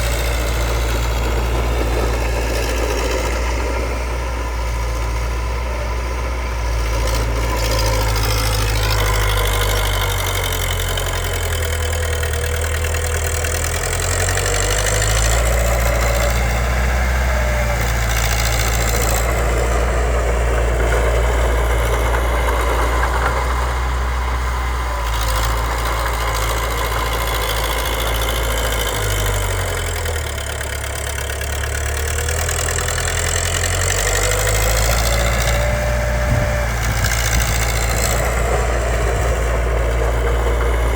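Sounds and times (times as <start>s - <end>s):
bulldozer diesel engine running: 0.0s - 40.9s.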